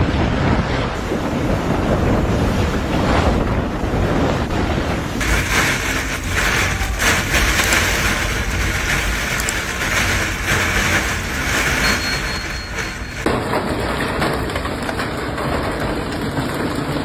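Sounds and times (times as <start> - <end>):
storm rushing hiss with impacts: 0.0 - 13.3.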